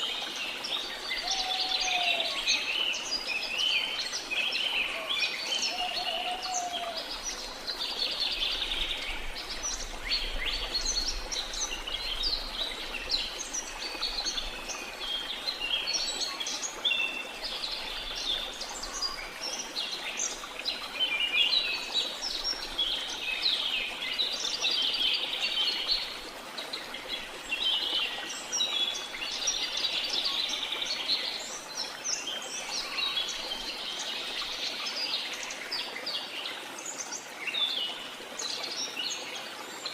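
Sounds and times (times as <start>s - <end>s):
falling water hiss: 0.0s - 39.2s
birds chirping and trilling: 1.0s - 19.3s.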